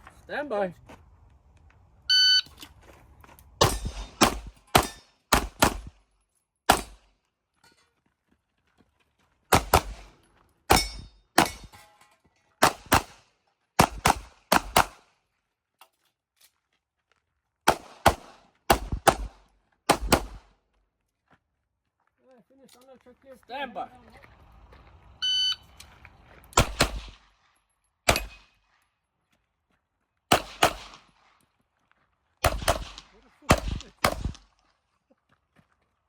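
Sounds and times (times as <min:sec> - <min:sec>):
pistol shots: 0:03.6 - 0:05.9, 0:06.7 - 0:07.1, 0:09.5 - 0:10.1, 0:10.7 - 0:11.7, 0:12.6 - 0:13.2, 0:13.8 - 0:15.0, 0:17.7 - 0:20.5, 0:26.6 - 0:27.3, 0:28.1 - 0:28.6, 0:30.3 - 0:31.1, 0:32.4 - 0:34.5.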